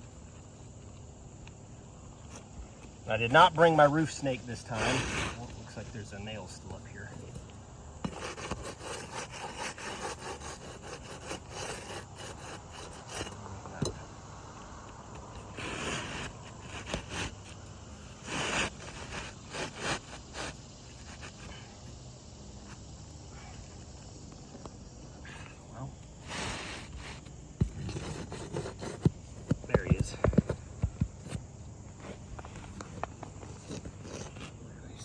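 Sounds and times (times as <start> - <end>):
hand tool scraping roof shingles: 4.0 - 5.8, 8.0 - 13.8, 15.4 - 17.6, 18.2 - 21.6, 26.2 - 31.4, 32.0 - 34.6.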